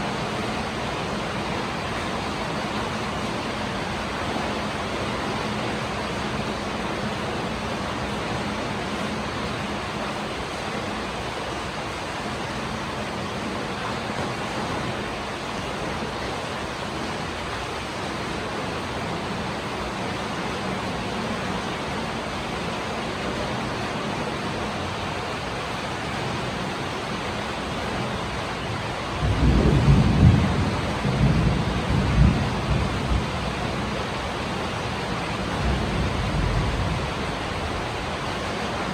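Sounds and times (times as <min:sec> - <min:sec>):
heavy rain falling: 0:00.0 - 0:38.9
low rumble of thunder: 0:29.2 - 0:34.2, 0:35.3 - 0:38.2.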